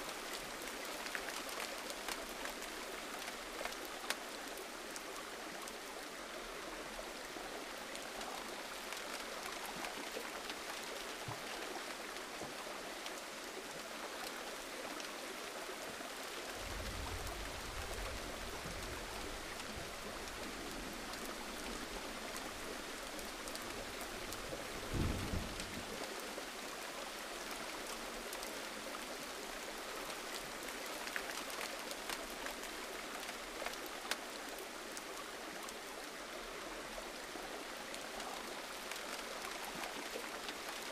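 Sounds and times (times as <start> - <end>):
gentle rain patter: 0.0 - 40.9.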